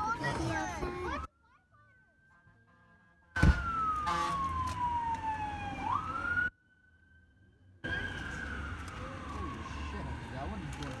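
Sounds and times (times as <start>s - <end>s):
emergency siren wailing: 3.3s - 11.0s
sharp thump: 3.4s - 3.8s.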